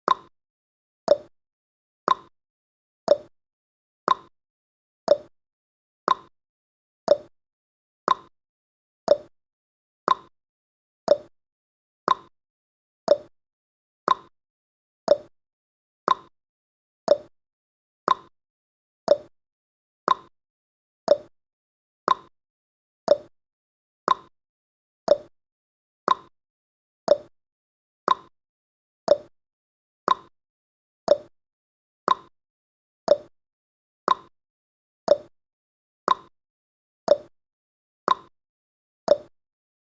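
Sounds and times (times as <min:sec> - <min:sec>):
timer ticking: 0:00.1 - 0:00.3, 0:01.1 - 0:01.3, 0:02.1 - 0:02.3, 0:03.1 - 0:03.3, 0:04.1 - 0:04.3, 0:05.1 - 0:05.3, 0:06.1 - 0:06.3, 0:07.1 - 0:07.3, 0:08.1 - 0:08.3, 0:09.1 - 0:09.3, 0:10.1 - 0:10.3, 0:11.1 - 0:11.3, 0:12.1 - 0:12.3, 0:13.1 - 0:13.3, 0:14.1 - 0:14.3, 0:15.1 - 0:15.3, 0:16.1 - 0:16.3, 0:17.1 - 0:17.3, 0:18.1 - 0:18.3, 0:19.1 - 0:19.3, 0:20.1 - 0:20.3, 0:21.1 - 0:21.3, 0:22.1 - 0:22.3, 0:23.1 - 0:23.3, 0:24.1 - 0:24.3, 0:25.1 - 0:25.3, 0:27.1 - 0:27.3, 0:29.1 - 0:29.3, 0:31.1 - 0:31.3, 0:33.1 - 0:33.3, 0:35.1 - 0:35.3, 0:37.1 - 0:37.3, 0:39.1 - 0:39.3.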